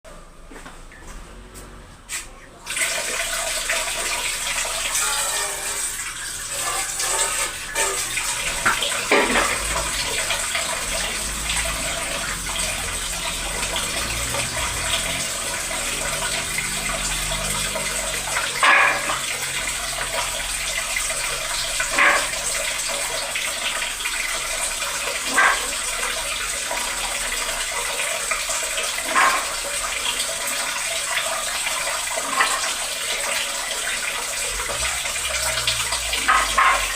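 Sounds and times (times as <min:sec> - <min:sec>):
kitchen tap running: 0:02.6 - 0:36.9.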